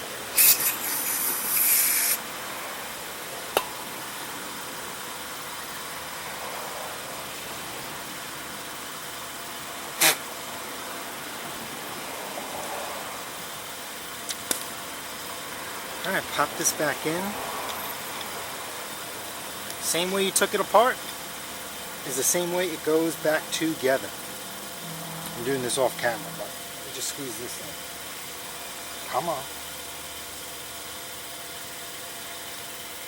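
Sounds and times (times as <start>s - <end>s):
spray blast hissing: 0.3s - 2.2s, 10.0s - 10.2s.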